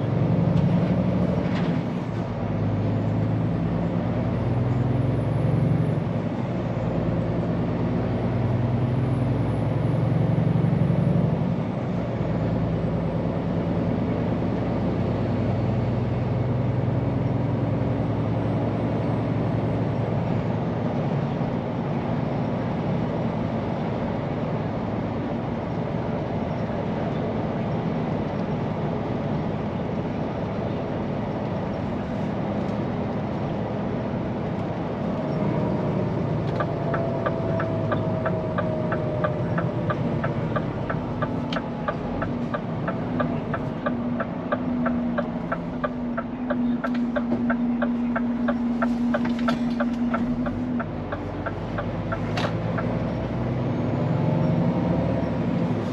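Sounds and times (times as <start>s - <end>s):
truck engine and road rumble: 0.0s - 55.9s
turn signal ticking: 36.3s - 53.2s.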